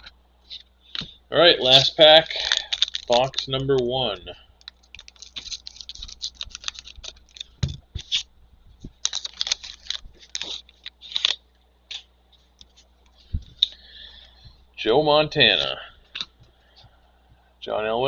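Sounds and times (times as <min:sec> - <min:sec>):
foil wrapper tearing and crinkling: 0:01.6 - 0:03.9, 0:04.6 - 0:08.3, 0:08.9 - 0:12.1.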